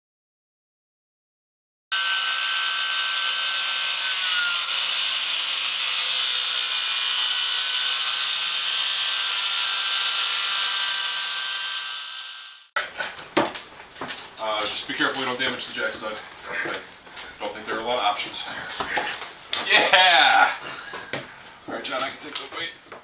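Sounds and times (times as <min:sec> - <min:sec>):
power saw cutting wood: 0:01.9 - 0:12.7.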